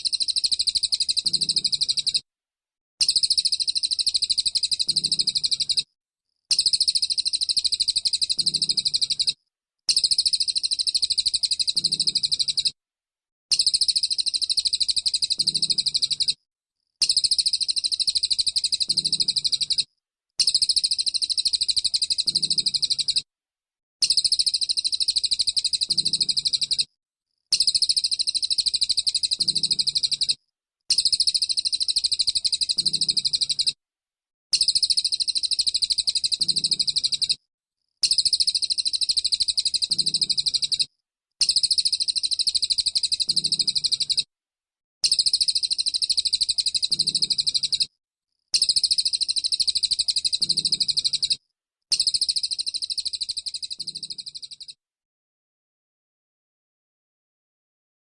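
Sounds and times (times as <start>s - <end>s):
bird singing high-pitched trill: 0.0s - 2.2s, 3.0s - 5.8s, 6.5s - 12.7s, 13.5s - 16.4s, 17.0s - 23.2s, 24.0s - 26.9s, 27.5s - 30.3s, 30.9s - 33.8s, 34.6s - 37.4s, 38.0s - 44.2s, 45.0s - 47.9s, 48.6s - 51.3s, 51.9s - 54.8s.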